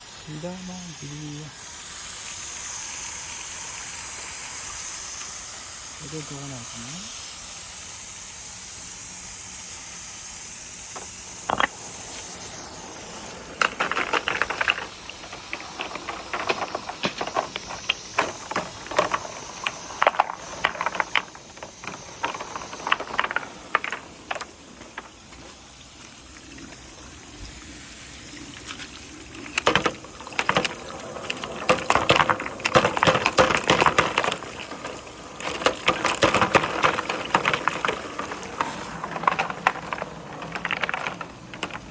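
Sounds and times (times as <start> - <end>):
balls clattering along gutters: 0.0 - 41.9
running water: 0.0 - 41.9.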